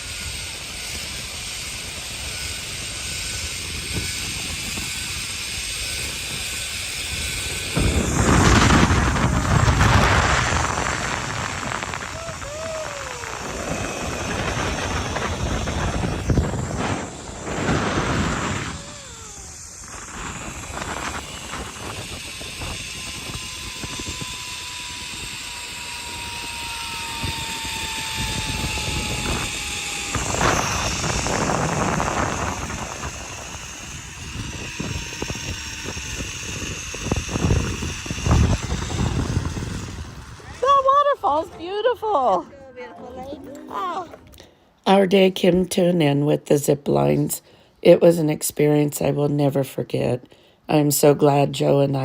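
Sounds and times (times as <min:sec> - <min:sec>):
zipline pulleys whirring on cable: 0:00.0 - 0:45.3
rush of air: 0:07.3 - 0:23.3.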